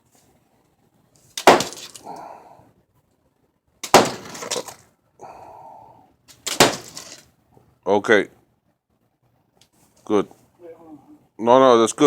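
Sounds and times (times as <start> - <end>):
debris rattling: 1.2 - 2.2, 3.8 - 4.9, 6.3 - 7.3
material cracking and breaking: 1.3 - 2.1, 3.8 - 4.8, 6.3 - 7.3
sledgehammer blow: 1.4 - 2.2, 3.8 - 4.7.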